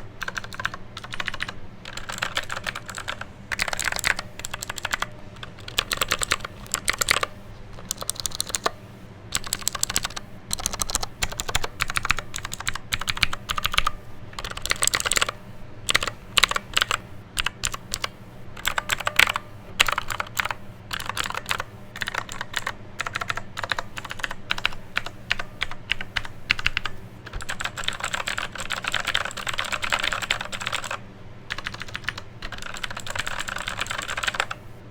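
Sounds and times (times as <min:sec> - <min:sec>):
clicky keyboard typing: 0:00.0 - 0:34.8
steady fan hum: 0:00.0 - 0:34.9.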